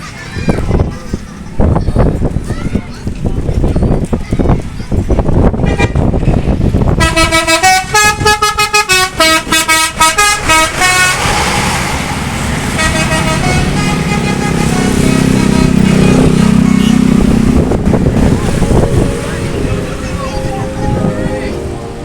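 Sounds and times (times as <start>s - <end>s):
bus engine droning: 0.0s - 22.0s
multi-tone musical bus horn: 5.6s - 11.9s, 12.7s - 22.0s.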